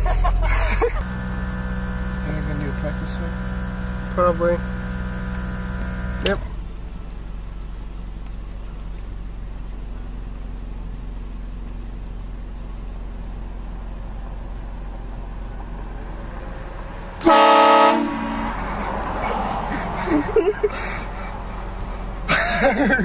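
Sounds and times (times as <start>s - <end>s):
low steady hum: 0.0s - 14.0s
air horn blast: 1.0s - 6.3s, 17.2s - 18.7s.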